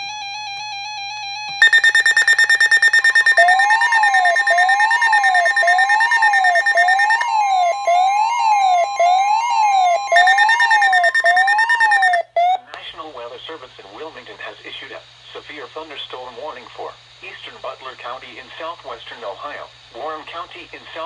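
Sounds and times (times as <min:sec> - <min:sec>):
rapidly pulsing high beep: 0:01.6 - 0:12.2
siren-like sweeping tone: 0:01.6 - 0:12.2
steady alert tone: 0:01.6 - 0:12.2.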